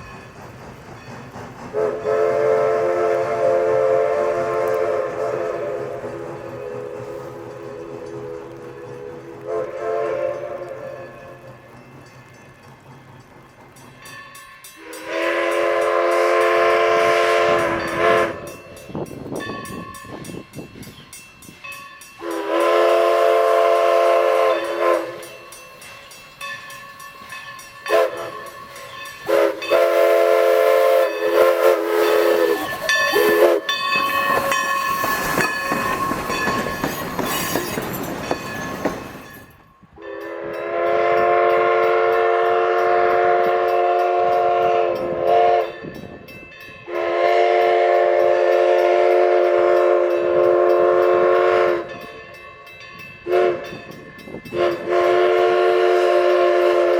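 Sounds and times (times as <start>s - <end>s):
train running past: 0.0s - 56.9s
steam whistle blasts: 1.7s - 11.1s, 14.8s - 18.7s, 22.2s - 25.4s, 27.8s - 36.3s, 40.0s - 45.8s, 46.9s - 52.0s, 53.2s - 53.8s, 54.5s - 56.9s.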